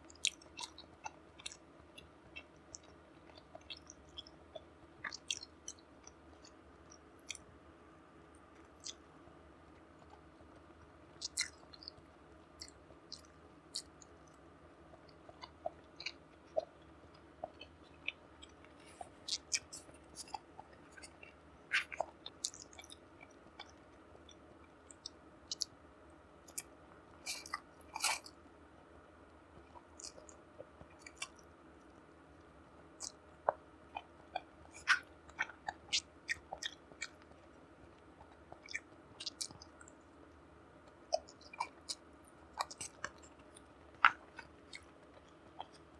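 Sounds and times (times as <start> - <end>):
faint steady hum: 0.0 - 45.9
chewing and mouth smacks: 0.1 - 7.5, 8.6 - 9.1, 11.2 - 25.8, 26.5 - 28.4, 29.6 - 31.9, 33.0 - 37.4, 38.0 - 40.0, 41.1 - 45.9.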